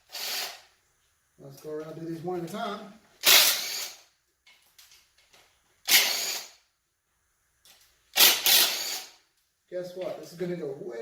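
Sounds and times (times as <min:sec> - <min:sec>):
cordless drill spinning bolts: 0:00.0 - 0:00.6, 0:03.2 - 0:04.1, 0:05.8 - 0:06.6, 0:08.1 - 0:09.2.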